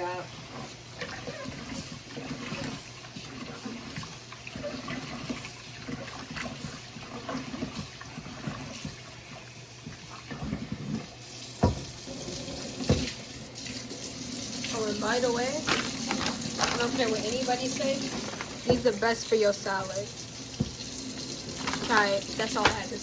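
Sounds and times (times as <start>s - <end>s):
water sloshing with rice: 0.3s - 11.8s.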